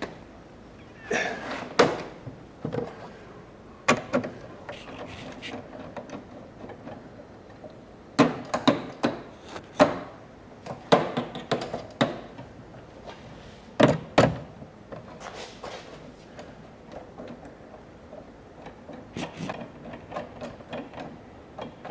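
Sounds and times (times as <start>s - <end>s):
hard knocks and clunks: 1.6s - 3.0s, 3.8s - 7.0s, 8.2s - 12.5s, 13.8s - 15.1s.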